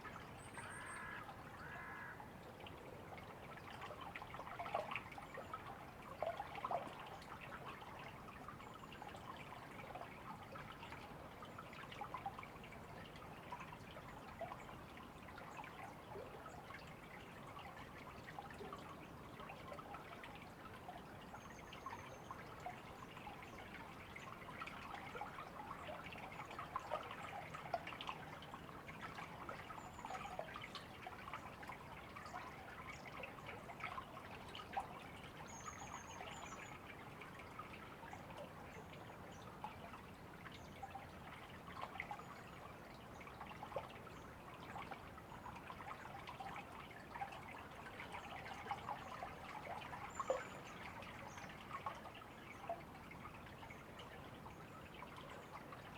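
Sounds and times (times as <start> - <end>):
river water trickling and splashing: 0.0 - 55.9.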